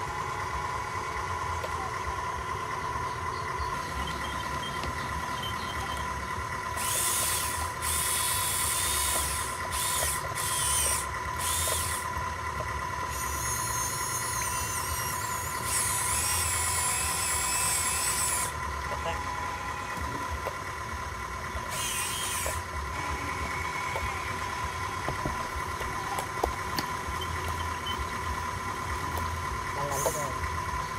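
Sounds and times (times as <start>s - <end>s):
steady whine: 0.0s - 30.9s
toy motors whirring: 6.8s - 12.1s, 13.1s - 18.6s, 21.6s - 22.7s.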